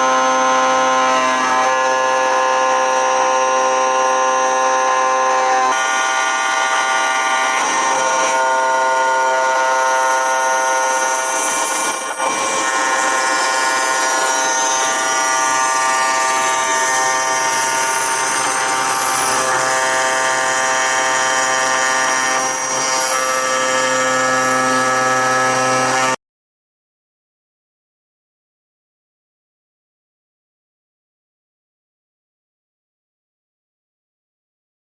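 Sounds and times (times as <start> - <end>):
machine tool cutting steel: 0.0 - 26.2.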